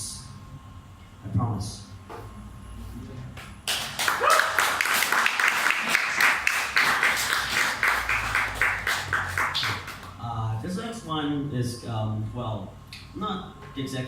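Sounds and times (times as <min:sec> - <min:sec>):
audience applauding: 0:03.6 - 0:10.2.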